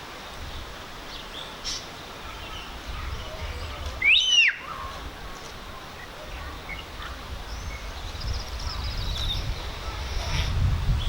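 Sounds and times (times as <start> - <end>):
steady low rumble: 4.8 - 11.0.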